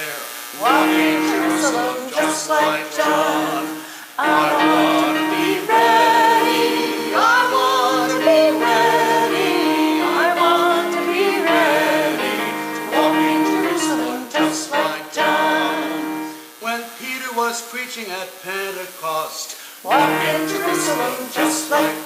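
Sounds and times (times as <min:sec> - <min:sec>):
instrumental accompaniment: 0:00.6 - 0:16.4
man and woman singing a hymn: 0:00.6 - 0:22.0.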